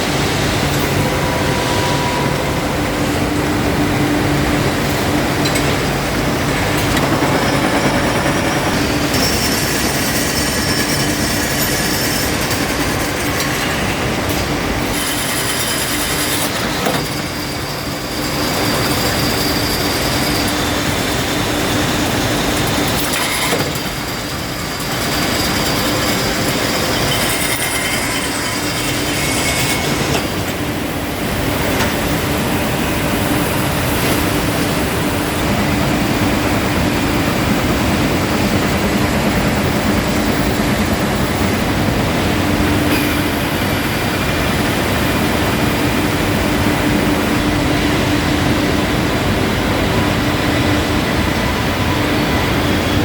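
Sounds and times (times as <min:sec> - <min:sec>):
high metallic squeals: 0:00.1 - 0:05.9, 0:14.8 - 0:46.2
rolling mill industrial din: 0:23.7 - 0:53.0.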